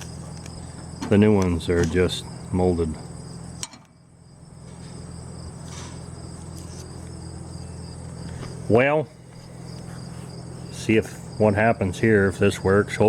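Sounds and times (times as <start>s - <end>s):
crickets trilling: 0.0s - 13.0s
low steady hum: 0.0s - 13.0s.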